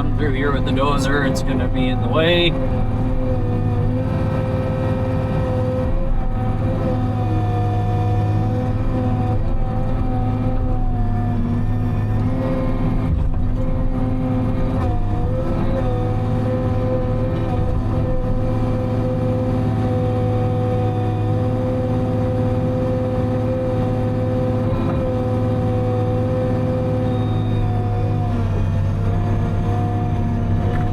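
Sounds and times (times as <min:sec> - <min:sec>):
steady whine: 0:00.0 - 0:20.4
diesel engine and hydraulics: 0:00.0 - 0:30.9.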